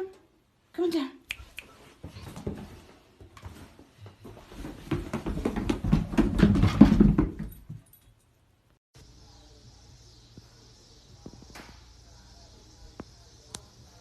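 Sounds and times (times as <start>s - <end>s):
dog paws thudding down stairs: 2.0s - 8.0s.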